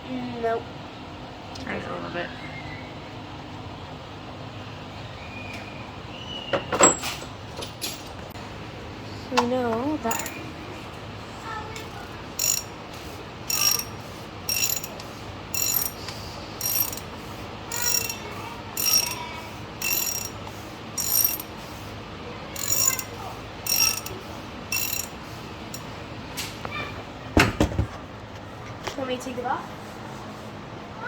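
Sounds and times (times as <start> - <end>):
socket ratchet clicking: 10.1 - 10.4, 12.4 - 12.8, 13.5 - 17.1, 17.7 - 19.2, 19.8 - 20.4, 21.0 - 21.5, 22.6 - 25.9
sharp clatter: 17.7 - 19.2, 22.6 - 25.1.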